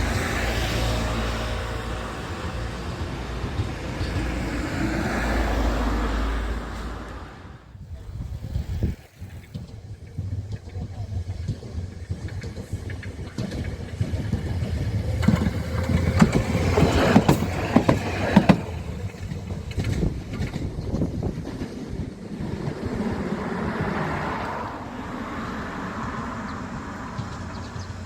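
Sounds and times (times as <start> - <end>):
vehicle passing close by: 0.0 - 8.8, 22.4 - 28.0
sharp clacks and knocks: 9.4 - 21.9.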